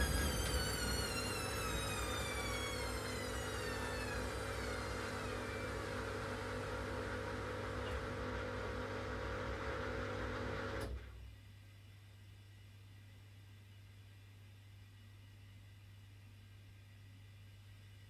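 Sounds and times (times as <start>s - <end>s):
washing machine motor hum: 0.0s - 11.0s.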